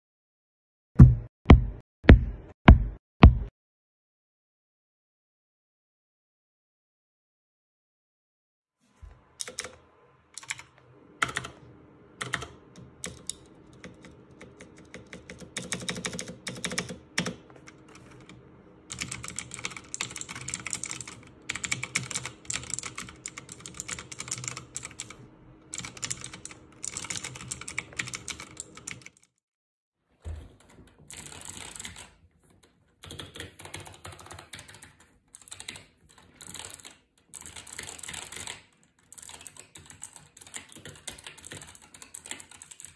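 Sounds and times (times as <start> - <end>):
typing on mechanical keyboard: 9.4 - 9.8, 10.4 - 11.6, 12.2 - 29.3, 30.6 - 42.9.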